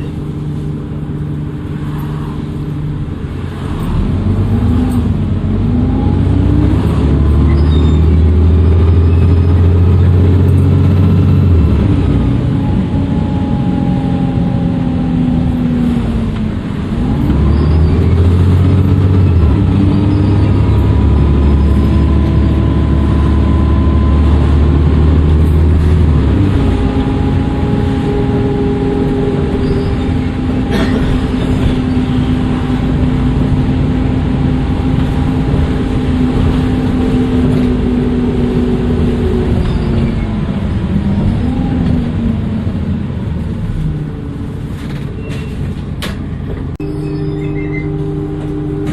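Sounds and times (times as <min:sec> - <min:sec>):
bus engine pulling under load: 0:00.0 - 0:48.9
turbocharger whistling: 0:06.4 - 0:15.8, 0:17.1 - 0:25.6, 0:26.3 - 0:30.8, 0:38.6 - 0:40.3, 0:46.8 - 0:48.9.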